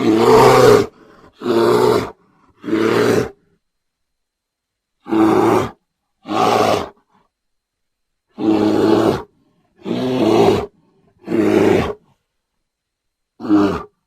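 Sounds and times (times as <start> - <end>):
bear roaring: 0.0 - 3.5, 5.0 - 7.0, 8.3 - 12.1, 13.4 - 14.0.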